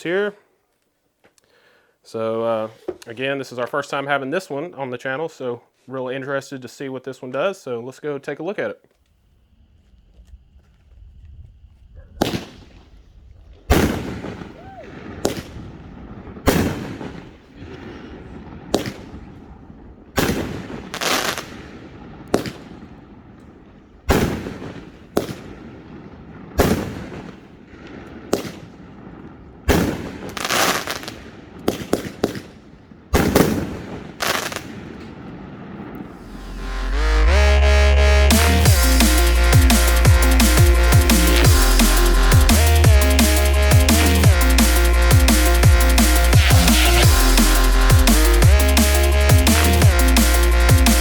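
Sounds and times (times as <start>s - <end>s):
firework bursts: 20.2s - 21.8s, 29.7s - 32.4s, 33.2s - 34.9s, 36.0s - 51.0s.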